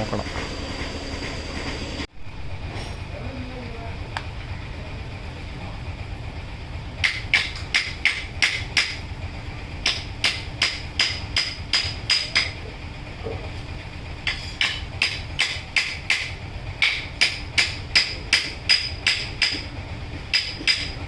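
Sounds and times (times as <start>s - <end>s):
low workshop rumble: 0.0s - 21.0s
hammer striking metal: 7.0s - 9.0s, 9.8s - 12.6s, 14.2s - 21.0s.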